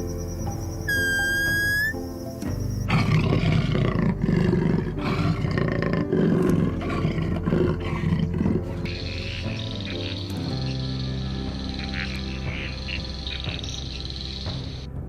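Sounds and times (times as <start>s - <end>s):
big cat roaring: 2.9s - 12.8s.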